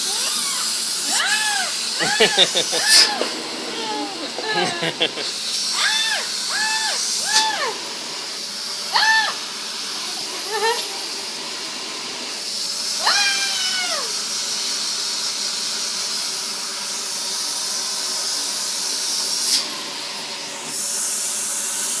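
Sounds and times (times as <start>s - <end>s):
vacuum cleaner running: 0.0s - 22.0s
baby squealing: 0.1s - 7.8s, 8.9s - 9.4s, 13.0s - 14.1s.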